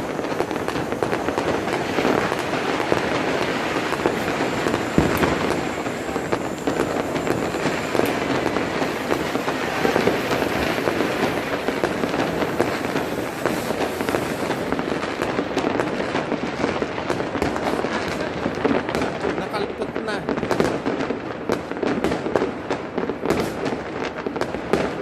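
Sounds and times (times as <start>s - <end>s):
fireworks crackling and banging: 0.0s - 25.0s.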